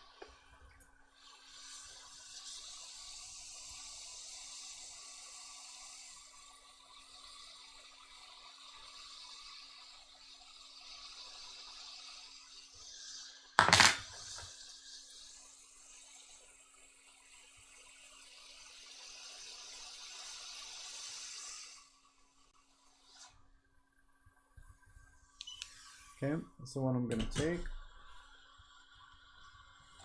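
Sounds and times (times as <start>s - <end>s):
hot air tool hissing: 1.2s - 16.3s, 17.7s - 22.0s.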